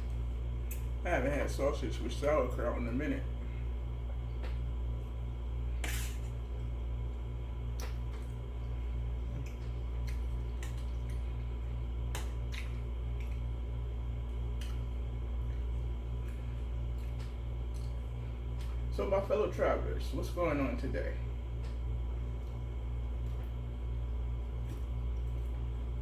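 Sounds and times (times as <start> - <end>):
low hum: 0.0 - 26.0
chewing smacks: 7.7 - 13.6, 14.2 - 18.8.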